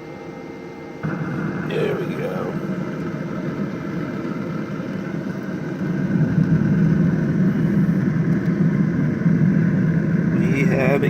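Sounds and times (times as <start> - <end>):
grill fan low rushing noise: 0.0 - 11.0.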